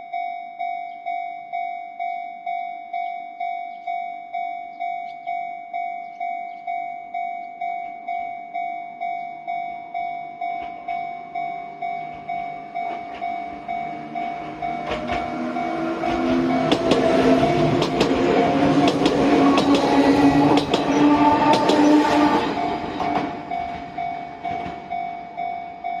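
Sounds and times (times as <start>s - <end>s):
level-crossing alarm bell ringing: 0.0s - 26.0s
train rolling past: 10.4s - 26.0s.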